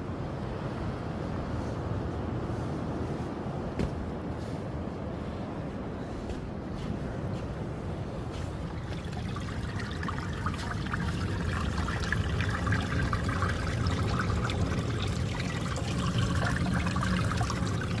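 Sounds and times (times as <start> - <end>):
water trickling and splashing: 8.0 - 18.0.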